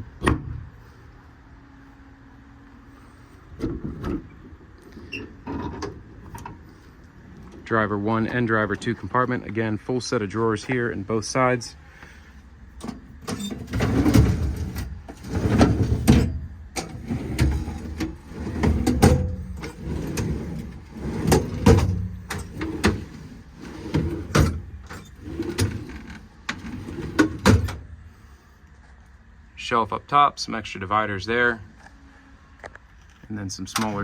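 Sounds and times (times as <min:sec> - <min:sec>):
metal drawers rolling open and shut: 0:03.6 - 0:09.2, 0:12.8 - 0:27.9.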